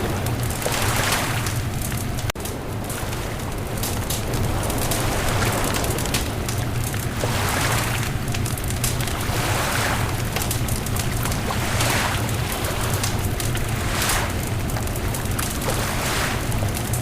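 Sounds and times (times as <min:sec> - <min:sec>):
bonfire crackling and popping: 0:00.0 - 0:17.0
surf washing in: 0:00.0 - 0:17.0.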